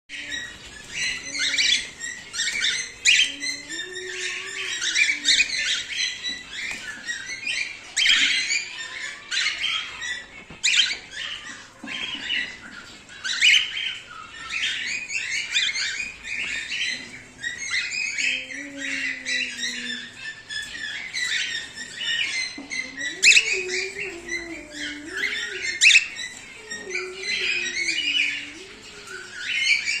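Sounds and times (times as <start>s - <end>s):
cockatiel chirping: 0.2s - 30.0s.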